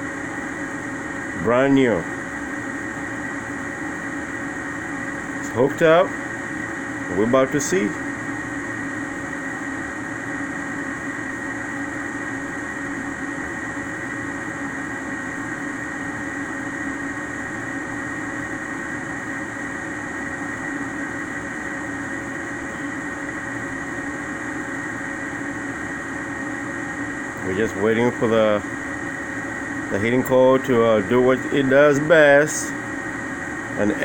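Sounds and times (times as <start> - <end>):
fan humming with high whine: 0.0 - 34.0.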